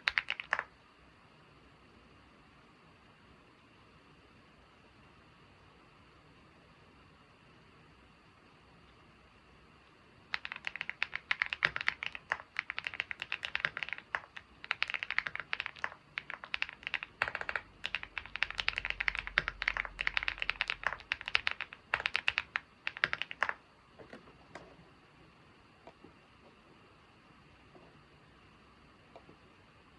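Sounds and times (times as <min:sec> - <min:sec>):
typing on computer keyboard: 0:00.0 - 0:00.7, 0:10.3 - 0:23.6.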